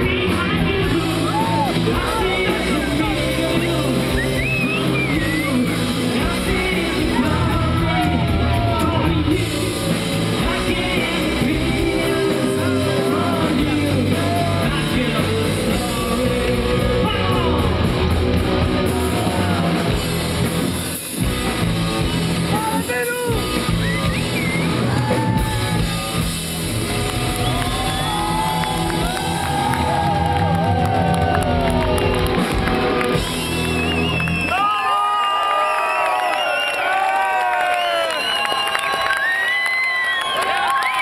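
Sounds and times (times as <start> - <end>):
person singing: 0.0 - 20.2
live rock band playing: 0.0 - 34.8.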